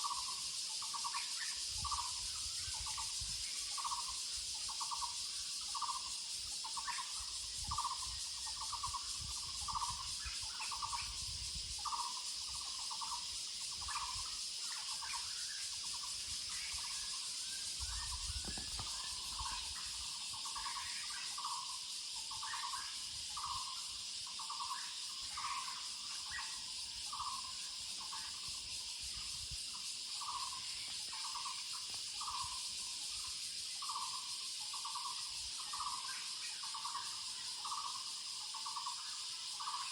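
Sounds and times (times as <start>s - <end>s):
insects high drone: 0.0s - 39.9s.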